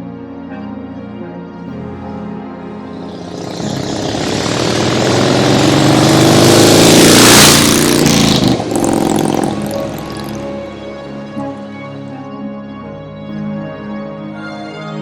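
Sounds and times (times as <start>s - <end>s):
background music: 0.0s - 15.0s
vehicle engine passing by: 1.8s - 12.1s.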